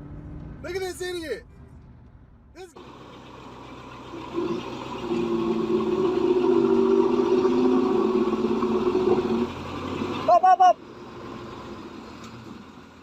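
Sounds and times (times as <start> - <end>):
engine running at high revs: 2.8 - 13.0.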